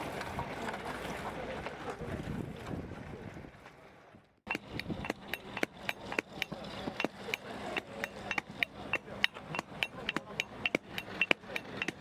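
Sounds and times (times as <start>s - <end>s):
sharp clicks: 4.5s - 12.0s.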